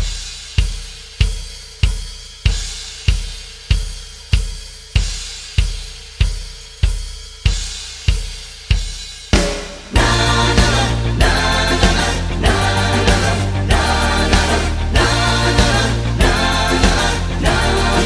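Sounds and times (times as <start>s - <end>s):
bass drum thumps: 9.4s - 18.0s.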